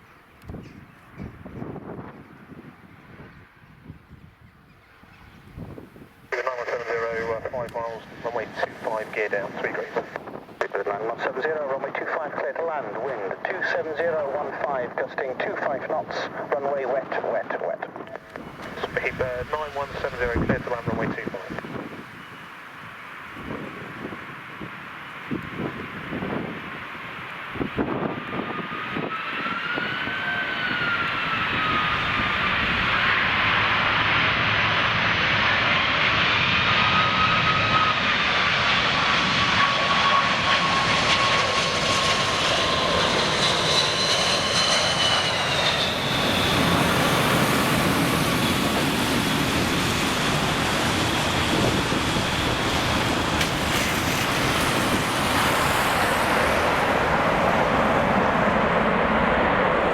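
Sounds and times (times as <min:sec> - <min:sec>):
jet engine roar with whine: 0:00.0 - 0:59.9.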